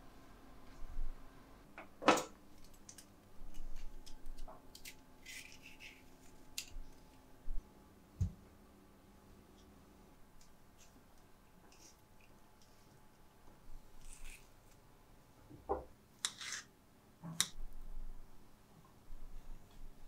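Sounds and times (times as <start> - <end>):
knife scraping and cutting: 4.7 - 6.7, 14.0 - 14.5, 16.2 - 16.7.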